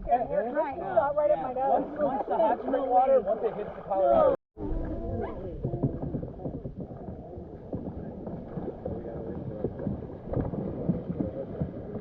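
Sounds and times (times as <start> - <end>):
paddle splashes: 0.8 - 12.0
wind rumble on microphone: 4.6 - 12.0
kayak knocks: 5.2 - 12.0.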